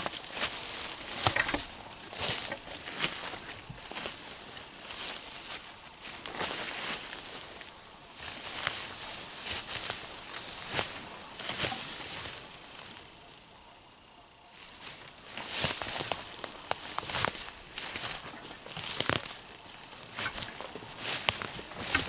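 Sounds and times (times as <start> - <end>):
twigs snapping: 0.0 - 4.3, 15.4 - 22.0
footsteps through dry brush: 0.0 - 22.0.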